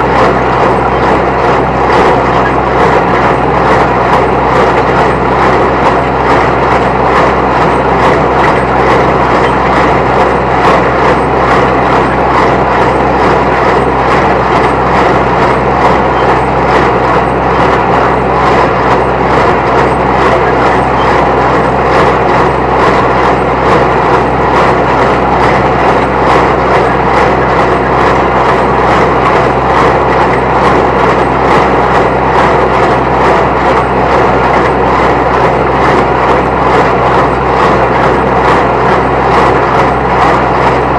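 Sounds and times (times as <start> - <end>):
diesel tractor running: 0.0 - 40.9.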